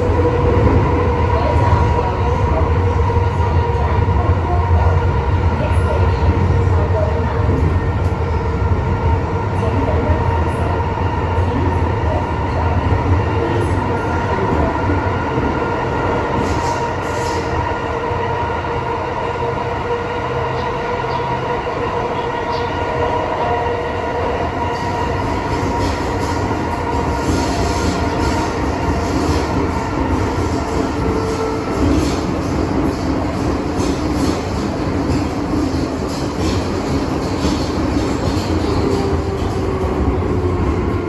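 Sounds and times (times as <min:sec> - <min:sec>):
wheels rumbling on rail: 0:00.0 - 0:41.0
rail clicks: 0:24.6 - 0:41.0.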